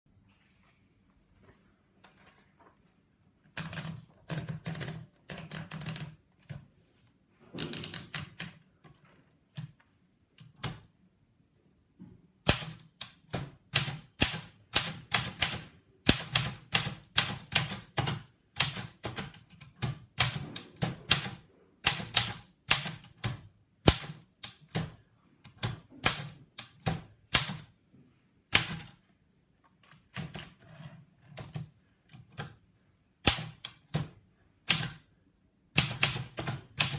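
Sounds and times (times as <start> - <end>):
manual typewriter typing: 3.5 - 6.6, 12.5 - 27.7, 35.7 - 36.9.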